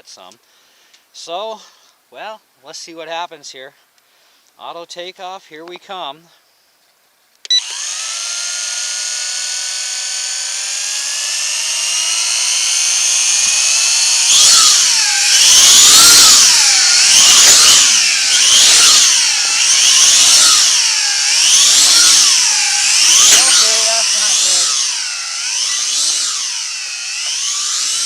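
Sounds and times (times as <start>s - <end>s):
toy drone propellers whining: 7.5s - 28.0s.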